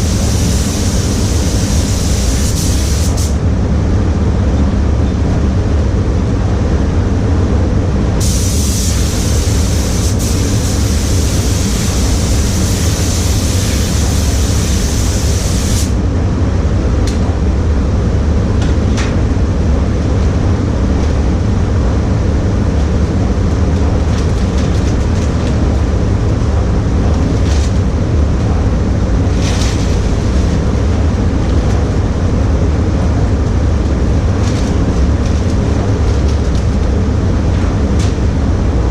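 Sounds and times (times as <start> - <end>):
spray gun hissing: 0.0 - 3.4, 8.2 - 16.0
ventilation low rumble: 0.0 - 38.9.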